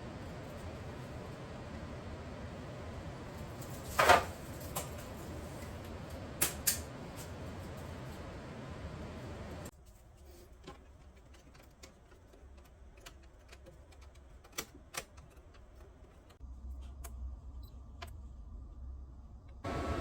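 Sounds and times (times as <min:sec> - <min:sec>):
low hum: 0:16.4 - 0:20.0.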